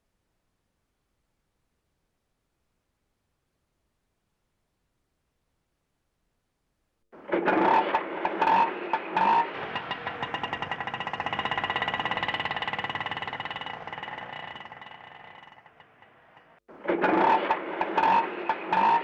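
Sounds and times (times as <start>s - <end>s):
small engine puttering: 7.2s - 19.0s.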